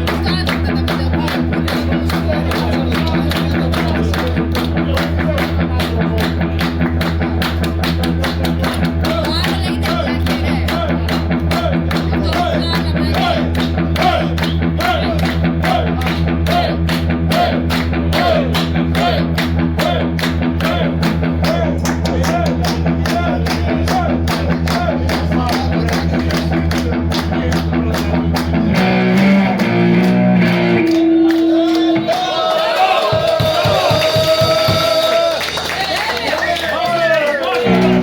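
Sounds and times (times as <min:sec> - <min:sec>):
live rock band playing: 0:00.0 - 0:32.2, 0:37.6 - 0:38.0.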